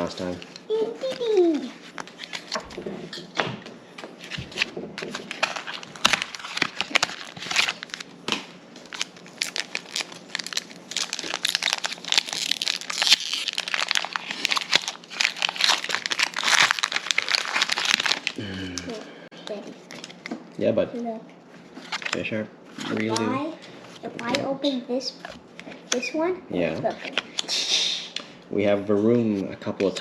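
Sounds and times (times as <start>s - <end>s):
foil wrapper crinkling and tearing: 1.0s - 2.8s, 4.2s - 19.0s, 19.8s - 20.3s, 21.8s - 22.2s.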